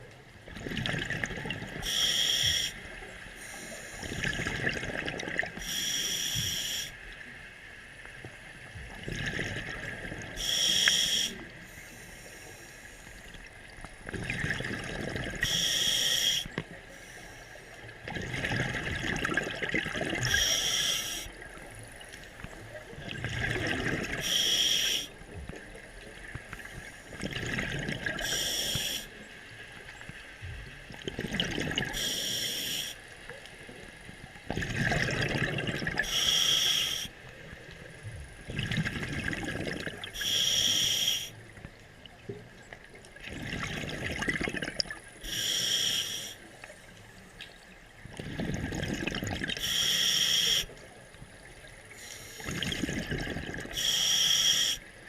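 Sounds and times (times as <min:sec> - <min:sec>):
exhaled bubbles burbling: 0:00.0 - 0:01.9, 0:04.0 - 0:05.7, 0:08.8 - 0:10.5, 0:13.9 - 0:15.5, 0:18.0 - 0:20.5, 0:22.4 - 0:24.3, 0:25.4 - 0:28.7, 0:30.9 - 0:32.1, 0:34.4 - 0:36.1, 0:38.4 - 0:40.2, 0:42.1 - 0:45.2, 0:47.6 - 0:49.7, 0:52.4 - 0:53.8
regulator inhale hiss: 0:01.8 - 0:02.8, 0:03.4 - 0:04.2, 0:05.6 - 0:07.0, 0:10.4 - 0:13.4, 0:15.4 - 0:17.8, 0:20.3 - 0:21.4, 0:24.2 - 0:25.2, 0:28.2 - 0:29.2, 0:31.9 - 0:33.2, 0:36.0 - 0:37.2, 0:40.1 - 0:41.5, 0:45.2 - 0:46.6, 0:49.6 - 0:50.8, 0:51.9 - 0:52.7, 0:53.7 - 0:55.0.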